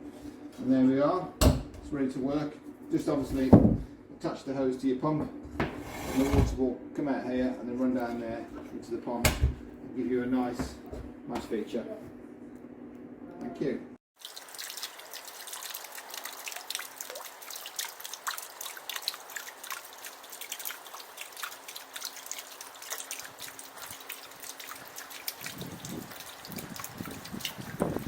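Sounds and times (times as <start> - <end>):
water trickling and splashing: 14.2 - 28.0.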